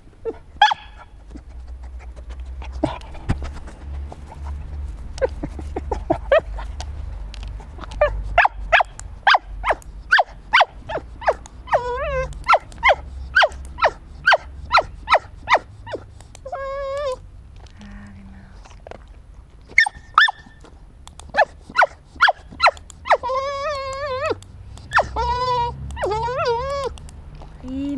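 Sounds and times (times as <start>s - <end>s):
dog whining: 0.2s - 3.2s, 5.2s - 6.8s, 7.8s - 17.2s, 19.7s - 20.6s, 21.3s - 27.0s
dog sniffing hard: 0.9s - 6.8s, 7.6s - 16.9s, 21.3s - 26.8s.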